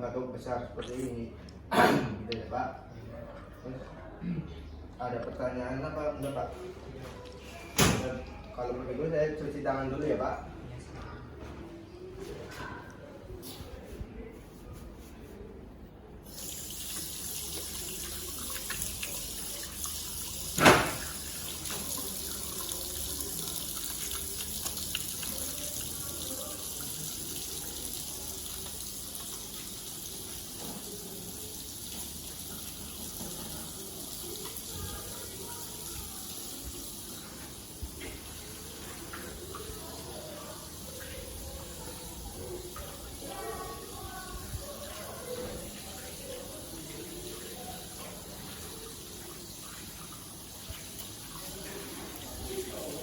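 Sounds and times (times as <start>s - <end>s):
tap water running into sink: 16.3s - 53.0s.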